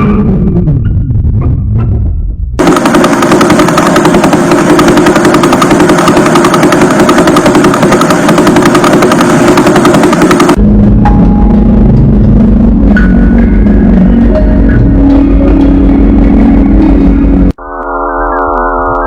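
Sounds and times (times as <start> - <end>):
rapid rattle of clicks: 2.6 - 10.6.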